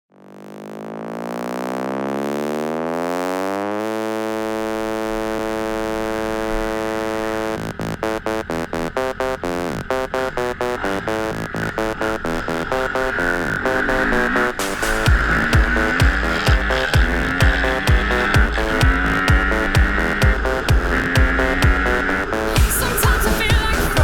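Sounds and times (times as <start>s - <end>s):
synthesizer note sweeping up: 0.1s - 24.0s.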